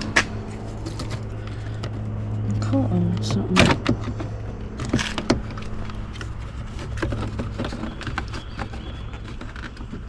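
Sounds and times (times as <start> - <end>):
steady low hum: 0.0 - 10.0
plastic parts clicking: 3.2 - 10.0.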